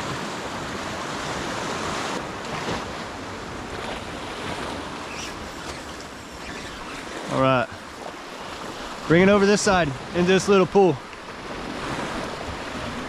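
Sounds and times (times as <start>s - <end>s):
ocean surf washing in: 0.0s - 13.0s
wind on microphone: 11.3s - 13.0s.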